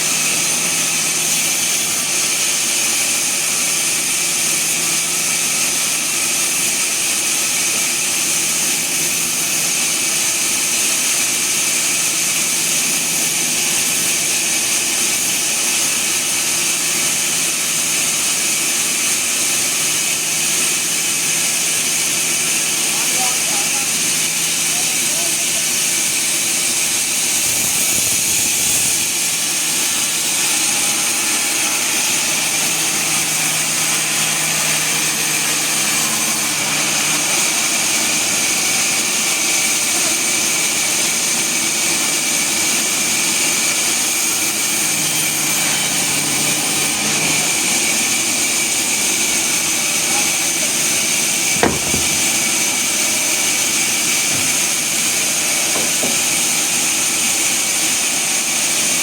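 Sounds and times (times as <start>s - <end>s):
sawmill machinery running: 0.0s - 59.0s
sharp knock: 51.5s - 56.6s.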